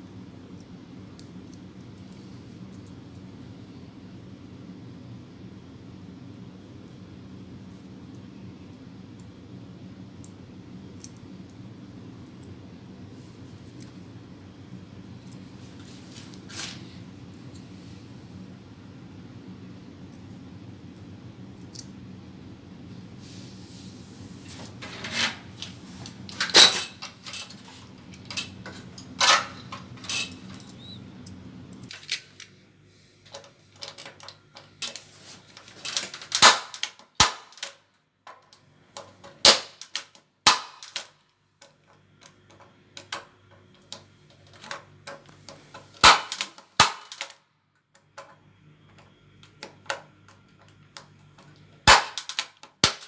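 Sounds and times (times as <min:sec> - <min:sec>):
low steady hum: 0:00.0 - 0:53.0
wire handling clicks: 0:25.6 - 0:32.6.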